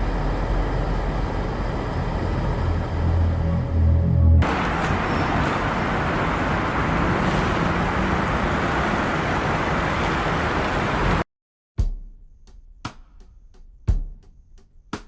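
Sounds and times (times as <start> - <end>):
faint low engine hum: 0.0 - 11.2
tyre and road noise: 4.4 - 11.2.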